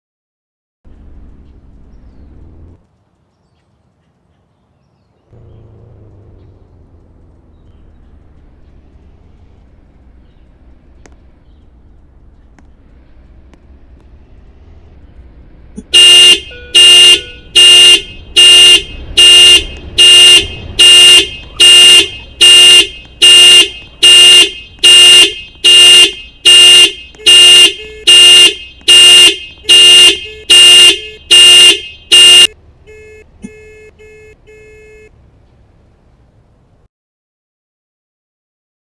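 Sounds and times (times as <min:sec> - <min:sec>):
car horn panic alarm blasts: 0:15.8 - 0:35.1.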